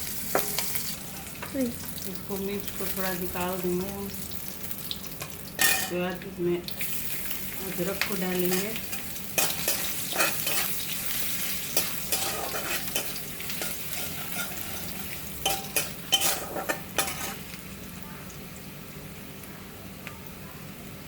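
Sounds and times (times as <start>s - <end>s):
food sizzling in hot oil: 0.0s - 19.5s
spoon clinking against pan: 15.4s - 17.4s.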